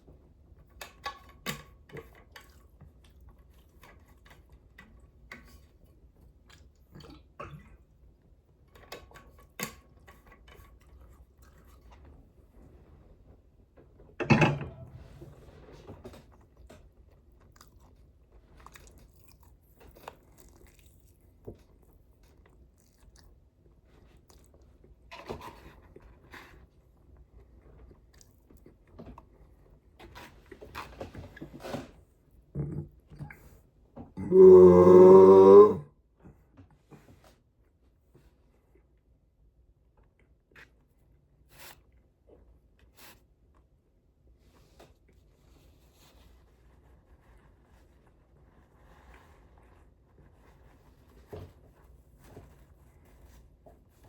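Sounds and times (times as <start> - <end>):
person chewing and crunching food: 17.2 - 24.6.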